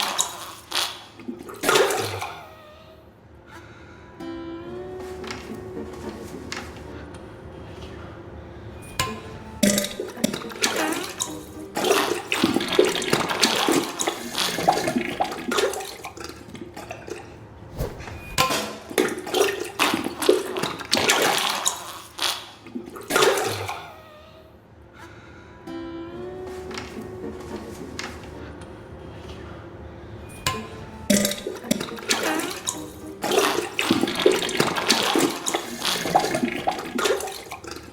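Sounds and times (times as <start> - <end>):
wet sputtering into toilet water: 0.0 - 2.4, 9.6 - 17.3, 18.4 - 23.8, 31.1 - 37.9.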